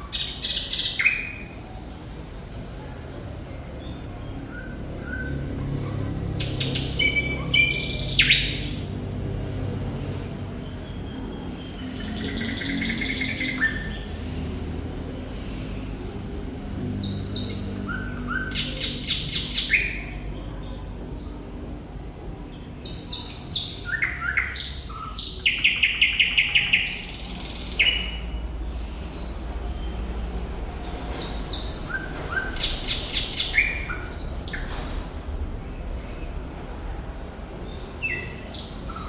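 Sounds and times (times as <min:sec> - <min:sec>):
thrush nightingale singing: 0:04.2 - 0:08.8, 0:16.5 - 0:20.2, 0:22.5 - 0:28.4, 0:37.7 - 0:39.0.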